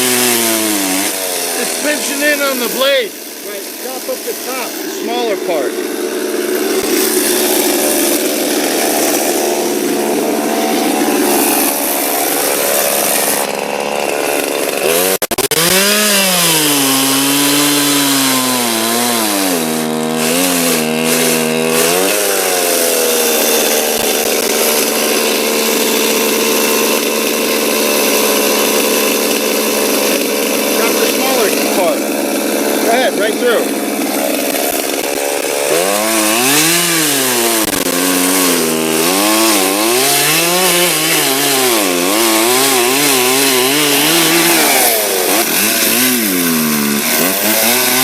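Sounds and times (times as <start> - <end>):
chainsaw cutting logs: 0.0 - 48.0.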